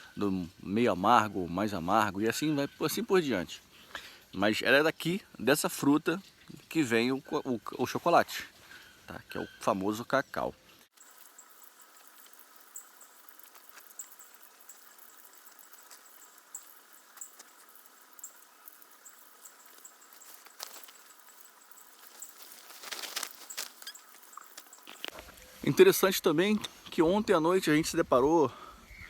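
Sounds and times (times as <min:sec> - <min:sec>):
rustling noise: 0:10.9 - 0:25.9.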